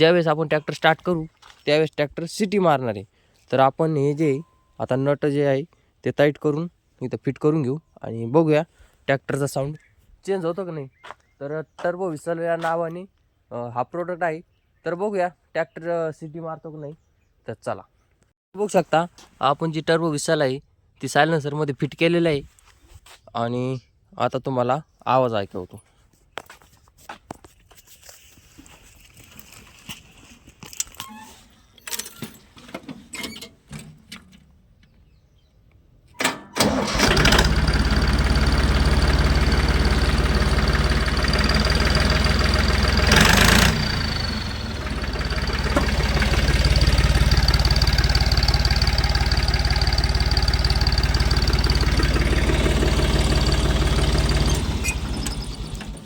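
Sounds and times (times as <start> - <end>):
tractor engine running: 36.6 - 56.0.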